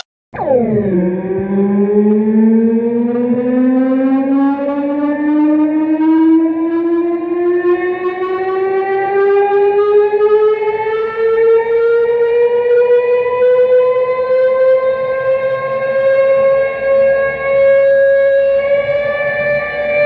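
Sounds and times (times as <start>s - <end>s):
siren winding up: 0.0s - 14.6s.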